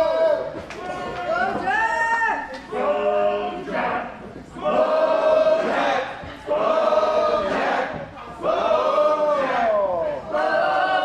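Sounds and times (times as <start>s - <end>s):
crowd chanting in unison: 2.7s - 11.0s.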